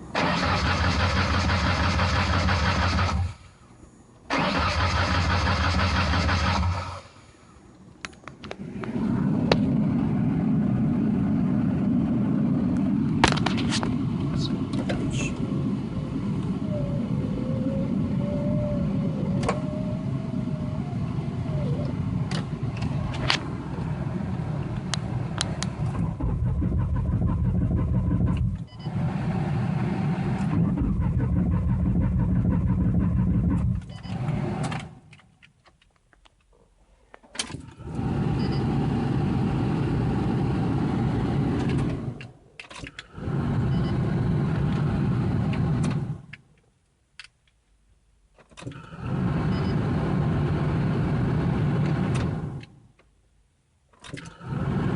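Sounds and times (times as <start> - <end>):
car engine cranking: 0.1 - 3.4, 4.3 - 7.1, 19.1 - 35.7, 48.4 - 52.8, 53.9 - 54.9.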